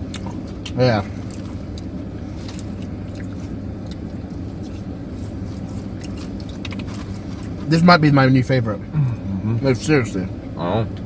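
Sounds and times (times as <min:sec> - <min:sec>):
chewing fried chicken: 0:00.0 - 0:07.7.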